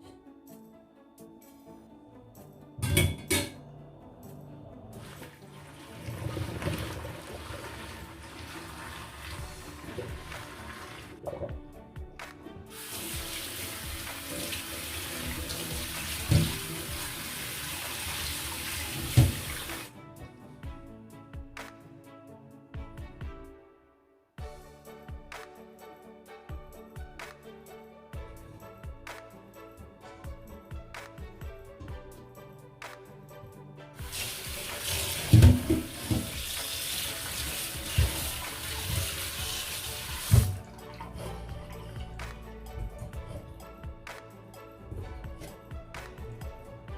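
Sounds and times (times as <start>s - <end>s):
tap running into sink: 6.0s - 11.5s, 12.7s - 19.9s, 34.0s - 40.6s.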